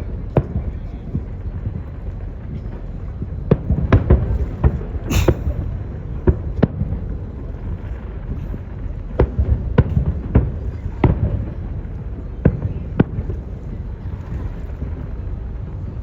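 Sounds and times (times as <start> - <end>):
fireworks bangs: 3.5 - 5.9
firework hiss: 5.1 - 5.8.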